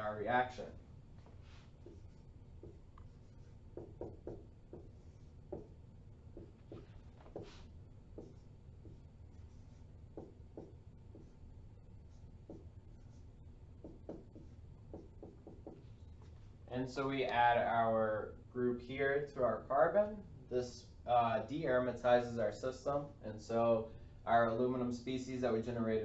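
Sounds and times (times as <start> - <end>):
room hum: 0.0 - 26.0
pen writing on paper: 1.8 - 5.8.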